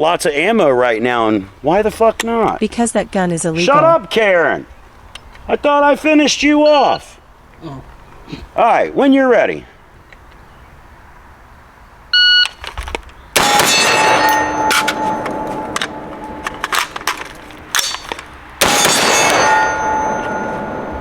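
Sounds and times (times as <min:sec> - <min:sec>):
rifle gunshots: 0:13.4 - 0:17.1, 0:18.6 - 0:20.4
steel targets ringing: 0:13.4 - 0:21.0.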